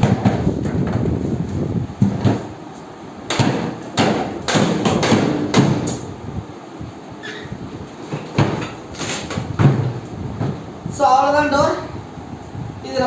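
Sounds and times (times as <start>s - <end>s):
refrigerator door knocks and clunks: 0.0s - 1.2s, 2.0s - 2.5s, 3.3s - 6.0s, 8.1s - 10.7s
faint squeak: 7.2s - 7.6s.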